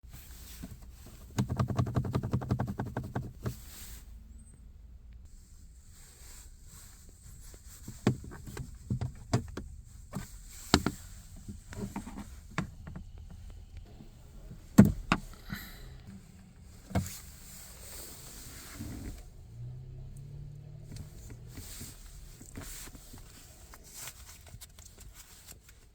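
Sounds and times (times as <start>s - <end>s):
low steady rumble: 0.1s - 25.9s
car body creaks and knocks: 8.0s - 15.5s.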